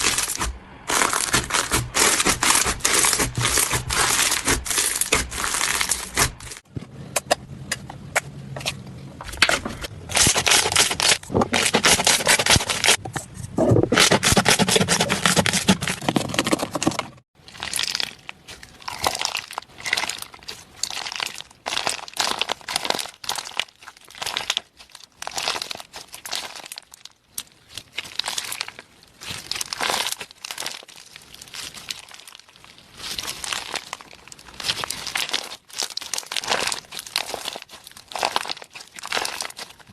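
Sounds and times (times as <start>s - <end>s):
slime squished by hand: 17.4s - 39.9s.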